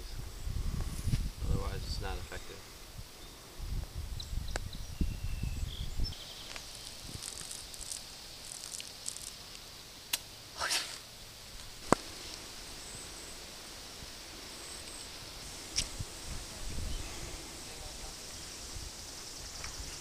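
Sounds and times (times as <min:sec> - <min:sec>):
faint high hiss: 0:00.0 - 0:20.0
rustle or scrape: 0:06.4 - 0:09.7, 0:10.5 - 0:20.0.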